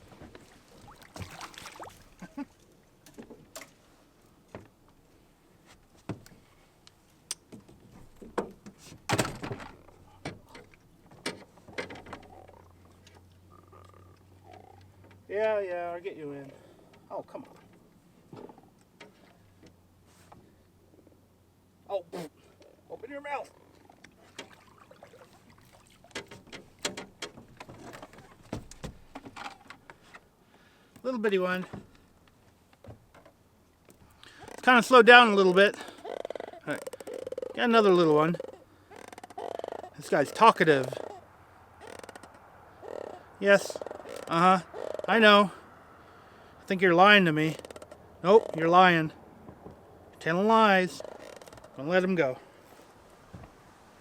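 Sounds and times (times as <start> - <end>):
gear knocking and clicking in boat: 25.9 - 30.2, 41.8 - 43.1, 47.5 - 48.6, 51.0 - 51.8.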